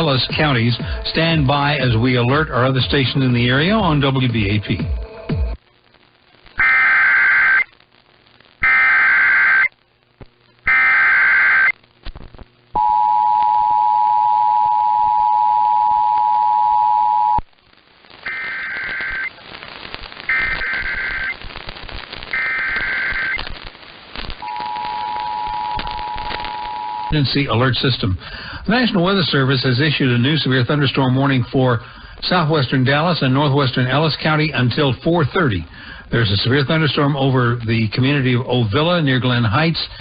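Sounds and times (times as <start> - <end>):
buzzy digital data bursts: 5.8 - 9.8, 10.6 - 11.9, 17.6 - 27.5
two-tone attention signal: 24.4 - 27.2.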